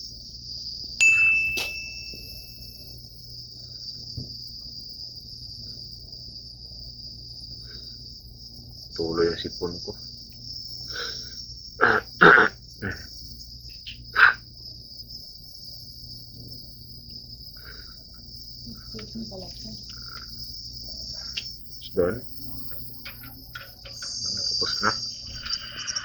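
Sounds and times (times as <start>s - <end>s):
high-pitched hiss: 0.0s - 26.0s.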